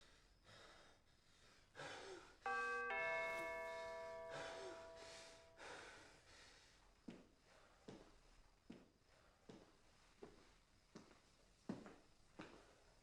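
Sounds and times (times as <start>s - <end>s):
two-tone doorbell chime: 2.5s - 5.8s.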